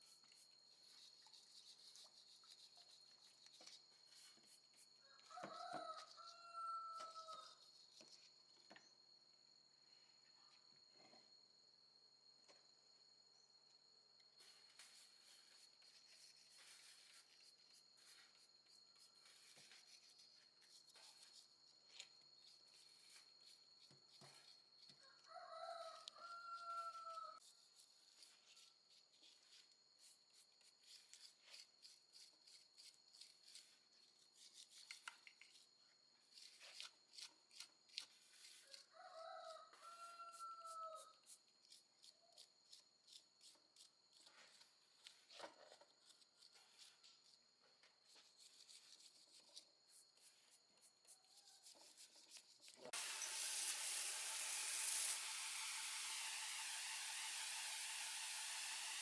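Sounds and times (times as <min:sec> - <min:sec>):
rooster crowing: 0:05.0 - 0:07.6, 0:25.0 - 0:27.4, 0:38.7 - 0:41.2
hand work clicks and rubbing: 0:34.5 - 0:35.7
steady hiss: 0:53.0 - 0:59.0.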